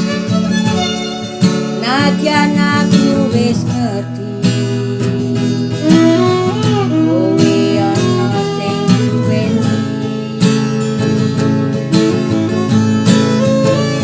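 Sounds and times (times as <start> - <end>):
acoustic guitar accompaniment: 0.0 - 14.0
sliding lead melody: 0.0 - 14.0.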